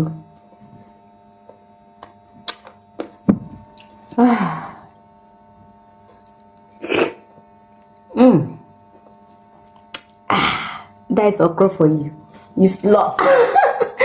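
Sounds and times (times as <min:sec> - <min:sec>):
steady electrical hum: 0:00.0 - 0:14.0
person humming: 0:04.1 - 0:05.0, 0:08.1 - 0:08.7
wet mouth clicks and smacks: 0:09.3 - 0:10.2.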